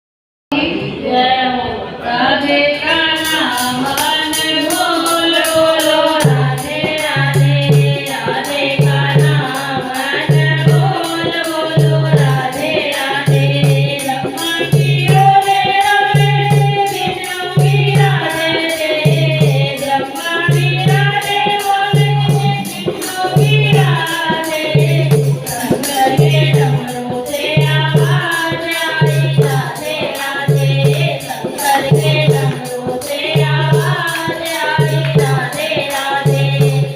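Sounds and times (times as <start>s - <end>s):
person singing devotional song: 0.5s - 36.9s
jingling percussion: 3.0s - 36.9s
low drumbeat: 24.8s - 28.3s.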